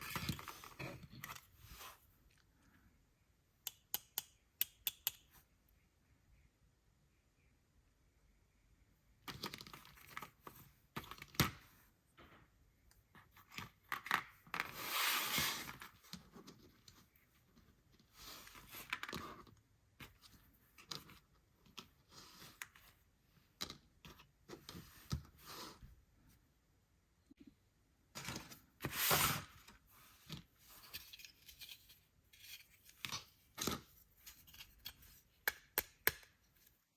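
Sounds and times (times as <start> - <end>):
sharp clicks and taps: 3.6 - 5.3.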